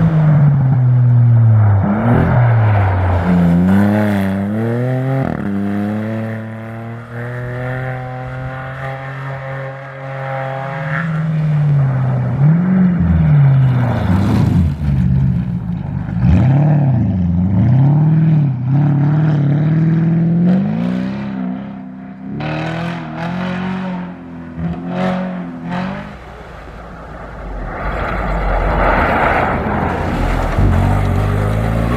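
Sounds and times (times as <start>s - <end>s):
car engine revving: 0.0s - 31.9s.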